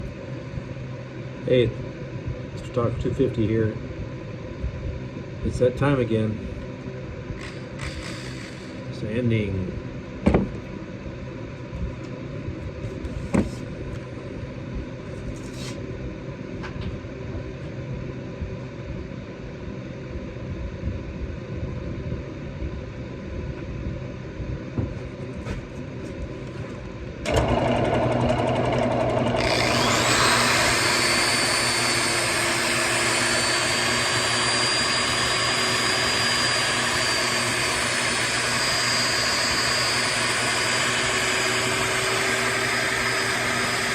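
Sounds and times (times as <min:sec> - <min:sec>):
low background hum: 0:00.0 - 0:43.9
high-pitched motor whining: 0:07.4 - 0:08.9, 0:28.4 - 0:43.9
motor humming: 0:07.4 - 0:08.9, 0:27.2 - 0:43.9.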